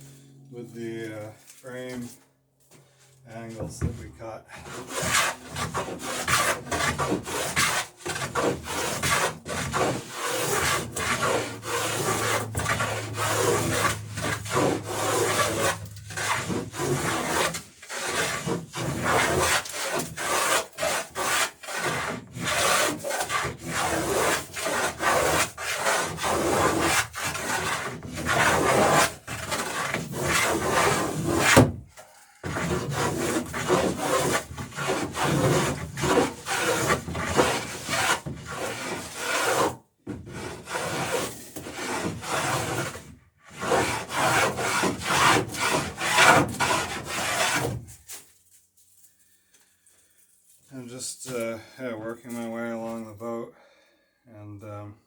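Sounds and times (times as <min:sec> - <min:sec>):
hand plane shaving wood: 0:03.5 - 0:48.2.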